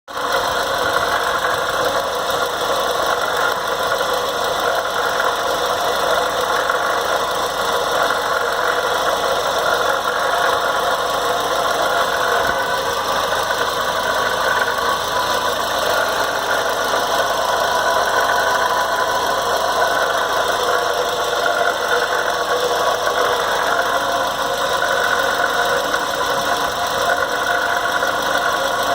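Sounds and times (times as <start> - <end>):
car engine idling: 0.1 - 28.9
strange whooshing engine noise: 12.4 - 28.9.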